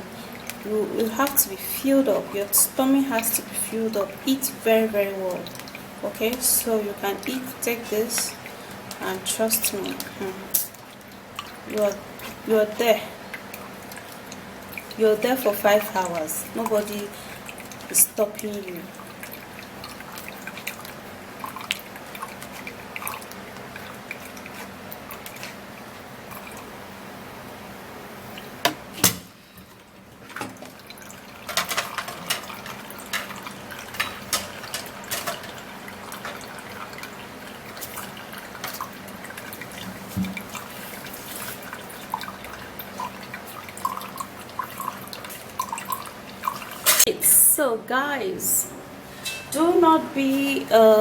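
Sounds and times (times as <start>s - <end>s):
liquid trickling into a cup: 0.1s - 26.8s, 29.4s - 47.0s
kitchen handling clicks: 28.7s - 29.3s.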